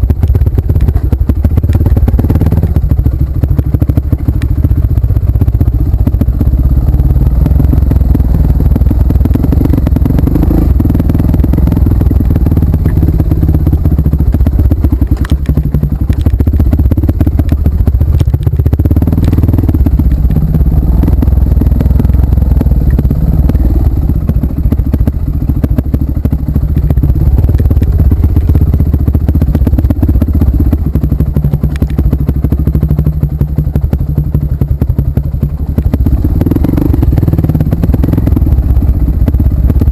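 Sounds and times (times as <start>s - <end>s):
motorcycle engine running: 0.0s - 39.9s
knocks and rattles: 9.1s - 23.7s.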